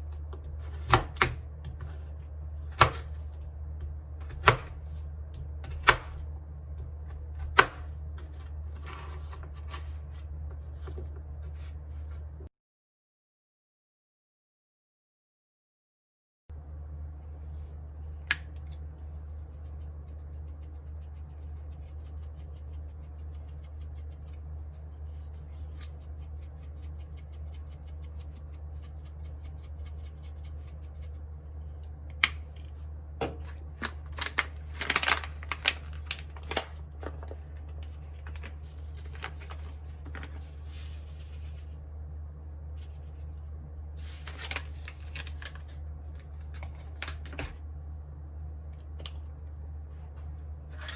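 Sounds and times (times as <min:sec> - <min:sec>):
steady low hum: 0:00.0 - 0:12.5, 0:16.5 - 0:50.9.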